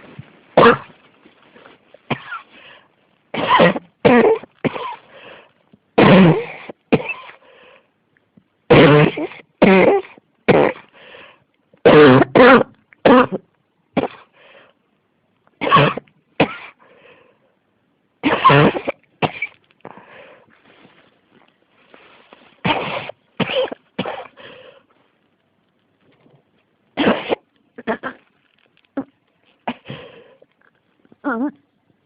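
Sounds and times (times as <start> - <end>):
woman coughing: 0.6 - 1.0, 2.1 - 2.5, 3.4 - 5.1, 6.0 - 7.4, 8.7 - 10.9, 11.9 - 13.4, 15.6 - 16.8, 18.2 - 19.6, 22.6 - 24.4, 27.0 - 28.3, 29.7 - 30.1.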